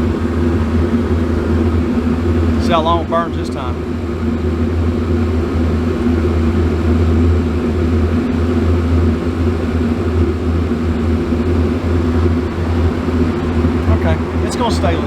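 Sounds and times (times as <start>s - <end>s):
furnace burner and blower humming: 0.0s - 15.0s
highway traffic noise: 10.2s - 15.0s.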